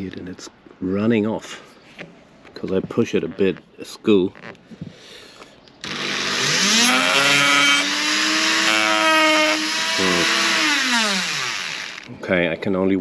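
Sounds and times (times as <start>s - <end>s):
rotary tool motor whine: 5.8s - 12.1s.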